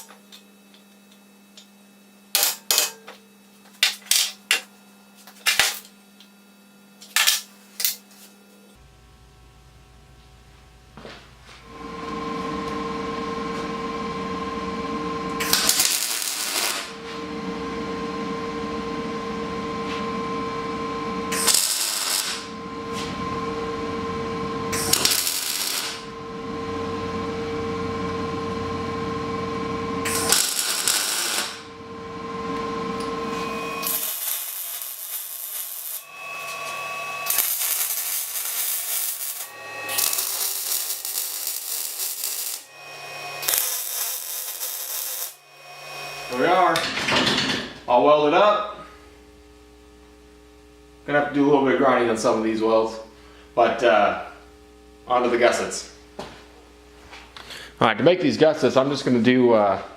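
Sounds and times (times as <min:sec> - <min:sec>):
steady electrical hum: 0:00.0 - 0:59.9
loud noisy bursts: 0:11.7 - 0:19.5, 0:20.3 - 0:32.4
welding hiss: 0:15.4 - 0:17.0, 0:21.3 - 0:22.5, 0:24.7 - 0:26.1, 0:30.1 - 0:31.7, 0:33.8 - 0:45.4.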